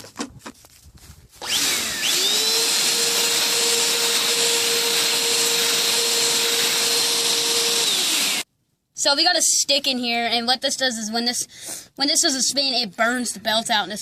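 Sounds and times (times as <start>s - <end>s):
vacuum cleaner motor running: 1.4s - 8.4s.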